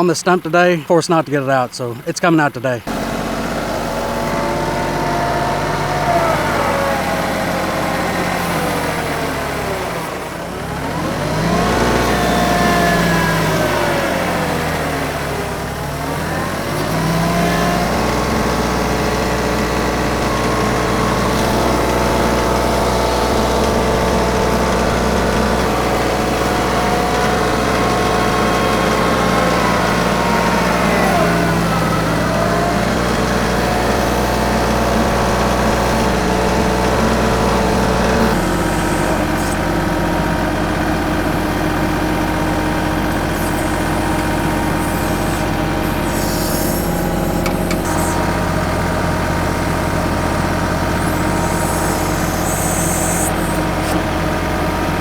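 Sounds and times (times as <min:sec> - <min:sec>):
tractor diesel engine labouring: 0:00.0 - 0:55.0.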